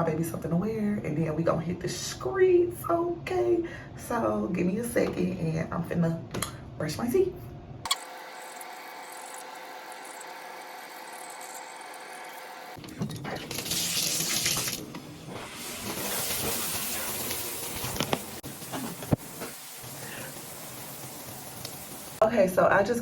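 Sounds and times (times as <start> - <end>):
water running from a tap: 8.2 - 15.0, 15.6 - 22.2.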